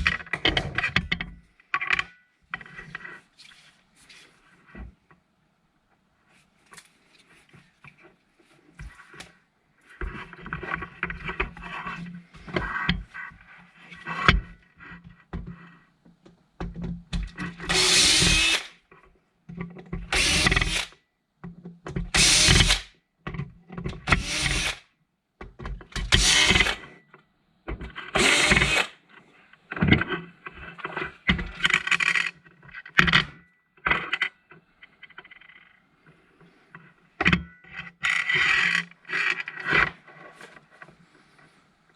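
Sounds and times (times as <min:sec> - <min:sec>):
power drill running in bursts: 0:26.2 - 0:26.8.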